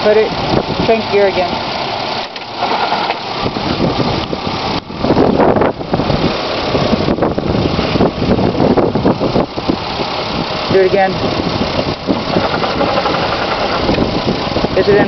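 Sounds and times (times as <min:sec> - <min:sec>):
car engine knocking: 0:09.8 - 0:15.0.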